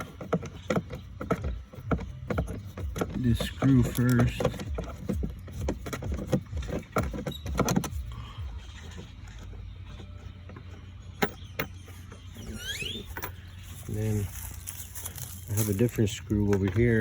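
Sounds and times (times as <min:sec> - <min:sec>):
hand tool clicking and rattling: 0:00.0 - 0:08.1.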